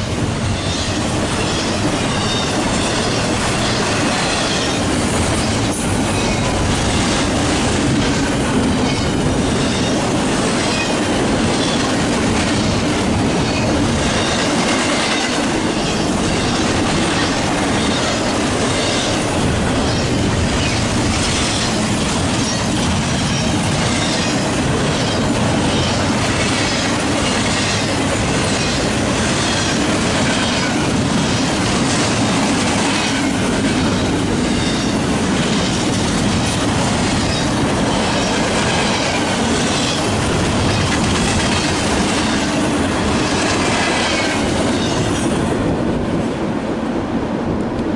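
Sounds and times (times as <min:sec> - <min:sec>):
wheels clacking over rail joints: 0:00.0 - 0:45.3
freight train rolling past: 0:00.0 - 0:47.9
high wheel squeal: 0:00.5 - 0:04.8, 0:08.8 - 0:10.0.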